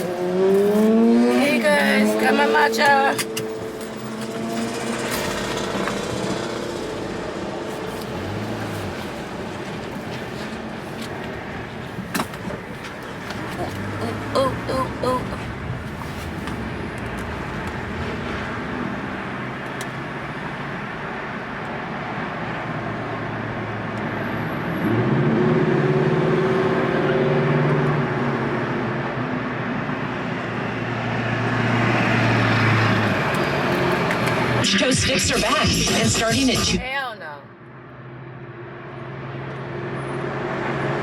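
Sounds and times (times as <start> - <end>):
low engine hum: 0.0 - 34.6
road and tyre noise: 0.0 - 41.0.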